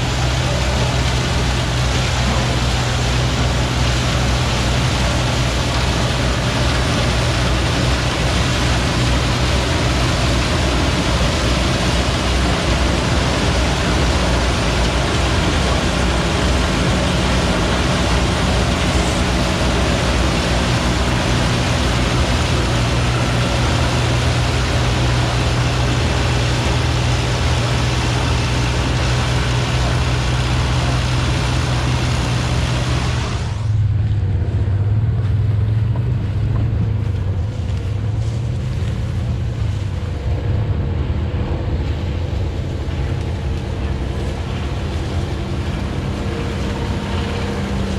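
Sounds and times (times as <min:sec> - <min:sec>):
combine harvester running: 0:00.0 - 0:47.9.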